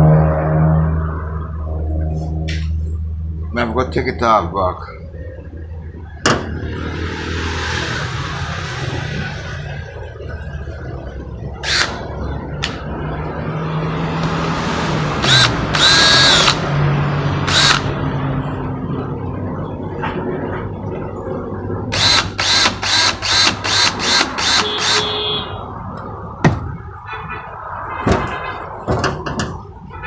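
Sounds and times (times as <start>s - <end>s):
power drill running: 11.6s - 12.8s, 15.2s - 16.7s, 17.4s - 17.9s, 22.0s - 25.1s.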